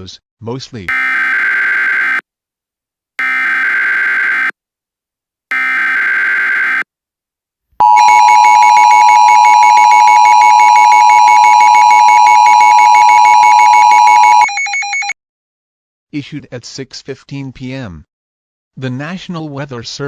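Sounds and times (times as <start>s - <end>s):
two-tone attention signal: 7.8s - 15.1s.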